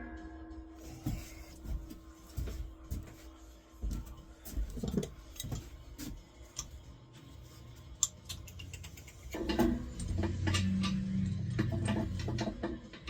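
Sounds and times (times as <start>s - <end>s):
steady low hum: 0.0s - 13.0s
metal pipe fittings clicking: 8.0s - 12.6s.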